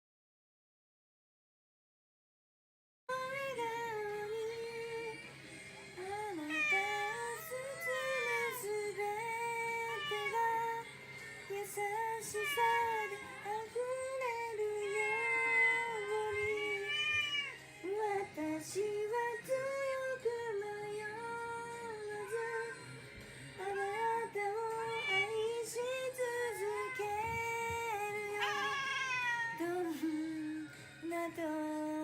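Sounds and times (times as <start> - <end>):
woman singing slow melody: 3.1 - 32.0
cat meowing: 6.4 - 10.8, 11.7 - 17.6, 24.6 - 29.7.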